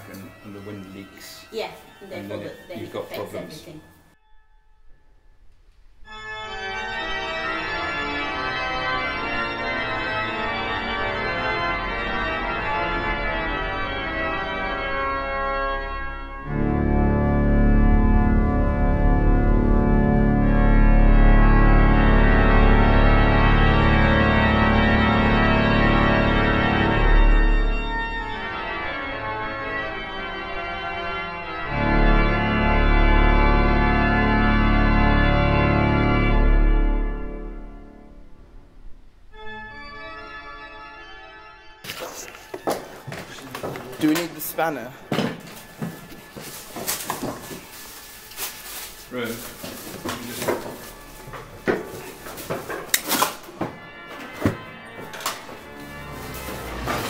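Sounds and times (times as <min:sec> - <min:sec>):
organ playing sustained chords: 0:00.0 - 0:04.8, 0:05.9 - 0:57.0
deep organ bass notes: 0:06.0 - 0:42.4, 0:53.7 - 0:57.0.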